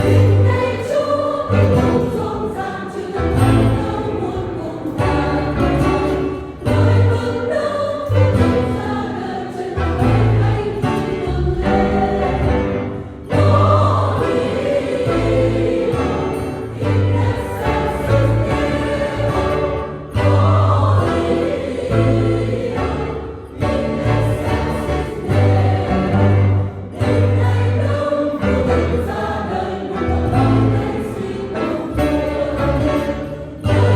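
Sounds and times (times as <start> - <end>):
choir singing: 0.0 - 33.9
instrumental accompaniment: 0.0 - 33.9
low repeated bass notes: 9.8 - 29.3.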